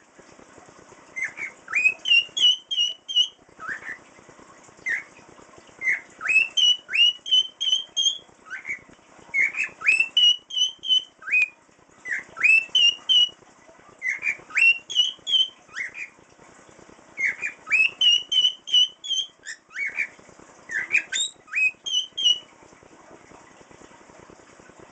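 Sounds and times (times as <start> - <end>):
cockatiel whistling: 1.2 - 4.0, 5.8 - 13.3, 14.0 - 16.1, 17.2 - 20.1, 20.7 - 22.5.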